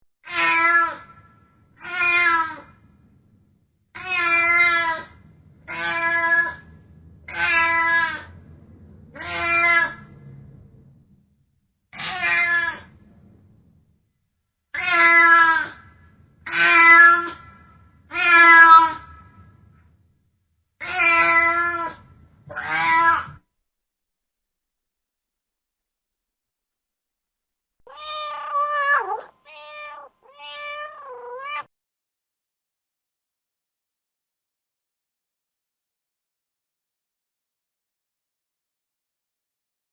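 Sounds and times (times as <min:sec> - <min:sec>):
cat yowling: 0:00.2 - 0:02.8, 0:04.0 - 0:06.7, 0:07.3 - 0:08.4, 0:09.2 - 0:10.1, 0:12.0 - 0:13.0, 0:14.8 - 0:19.2, 0:20.8 - 0:23.4, 0:27.9 - 0:31.7.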